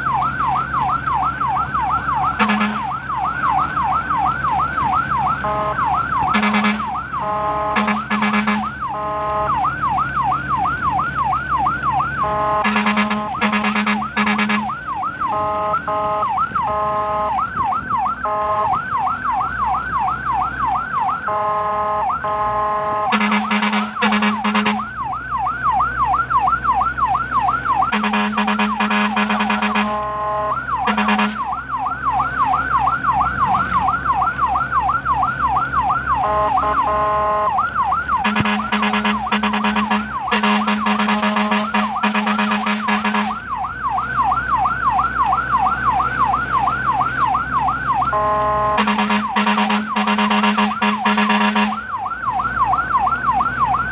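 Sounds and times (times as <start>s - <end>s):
electronic siren yelping: 0.0s - 53.9s
vehicle engine humming low: 0.0s - 53.9s
vehicle horn blasts: 2.4s - 2.9s, 5.4s - 9.5s, 12.2s - 14.7s, 15.3s - 17.2s, 21.3s - 24.9s, 27.9s - 31.4s, 36.2s - 37.4s, 38.2s - 43.4s, 48.1s - 51.8s.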